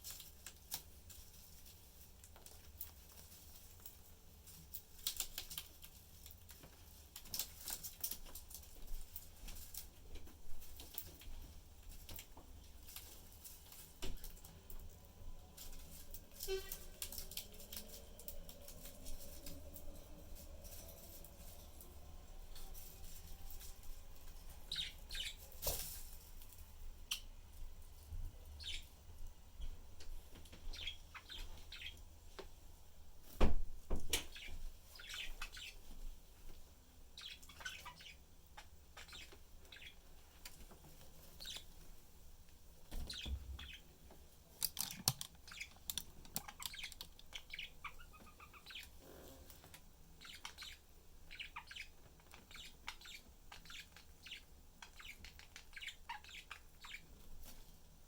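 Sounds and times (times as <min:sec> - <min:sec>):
budgies chirping and twittering: 0:12.1 - 0:25.8, 0:28.5 - 0:29.0, 0:29.6 - 0:32.0, 0:34.1 - 0:36.0, 0:37.2 - 0:41.8, 0:42.8 - 0:43.9, 0:44.9 - 0:57.6.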